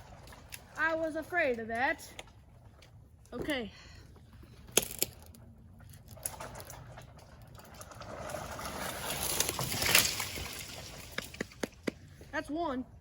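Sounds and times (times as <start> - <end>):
tree trunk hitting ground: 9.2 - 12.0.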